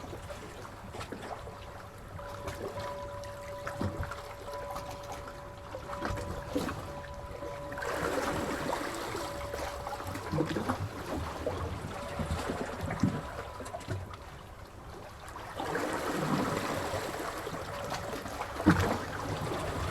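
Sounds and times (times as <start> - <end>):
faint two-tone hum: 0.0 - 14.9
seawater lapping and splashing: 0.0 - 19.9
water trickling and gurgling: 0.0 - 19.9.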